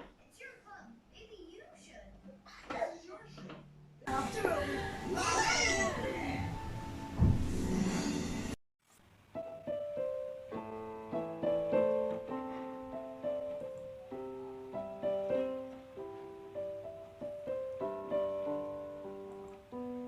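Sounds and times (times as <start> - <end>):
gentle piano melody: 4.1 - 8.0, 9.3 - 20.0.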